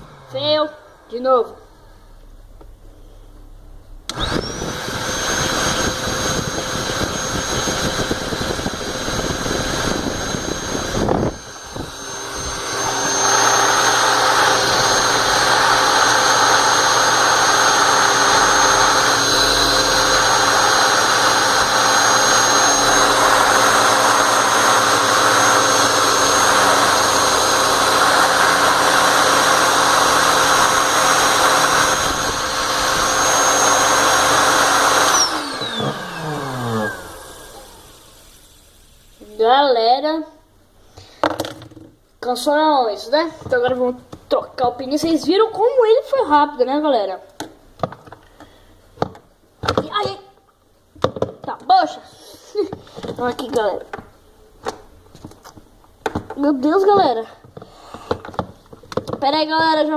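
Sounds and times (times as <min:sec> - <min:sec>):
air inflator motor whining: 0:04.1 - 0:39.4.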